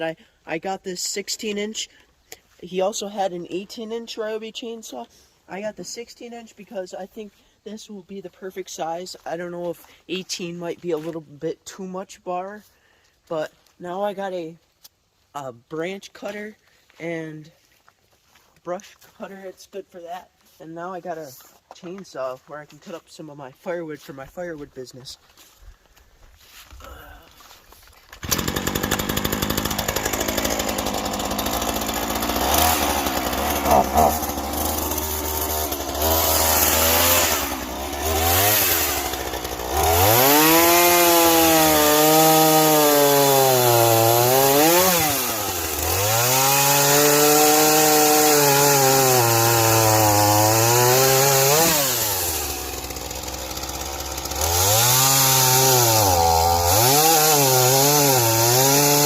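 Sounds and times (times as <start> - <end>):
chainsaw cutting log: 28.1 - 59.0
chainsaw engine revving: 28.2 - 59.0.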